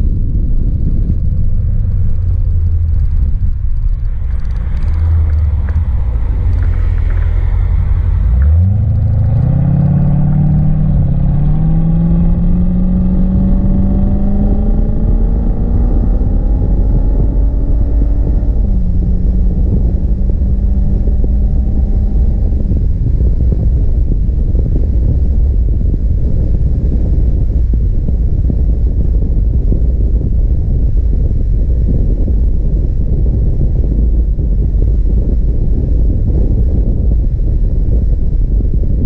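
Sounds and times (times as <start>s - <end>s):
road and wind noise rumble: 0.0s - 39.0s
car engine revving: 1.7s - 23.7s.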